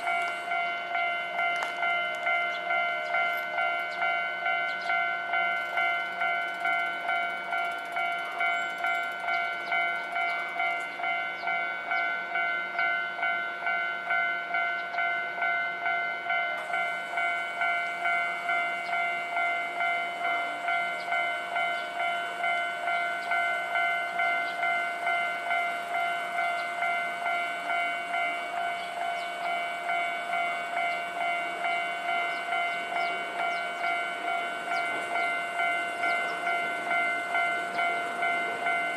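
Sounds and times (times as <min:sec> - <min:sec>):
level crossing warning bell: 0:00.0 - 0:38.9.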